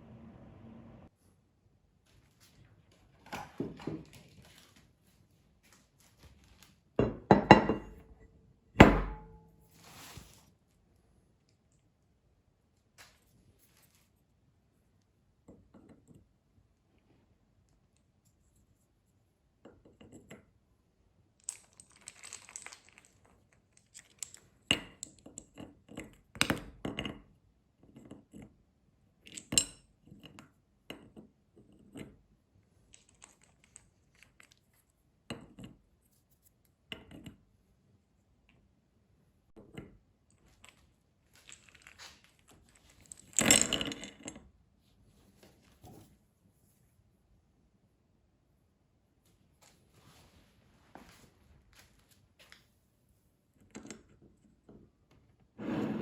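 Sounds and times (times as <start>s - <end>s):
rubbing or rustling: 9.6s - 10.5s.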